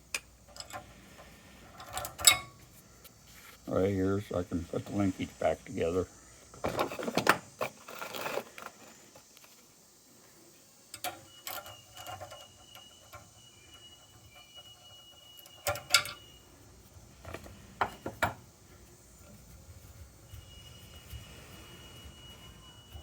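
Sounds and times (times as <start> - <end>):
metallic clicks and clinks: 0.1 - 0.9, 1.7 - 2.6, 15.4 - 16.3.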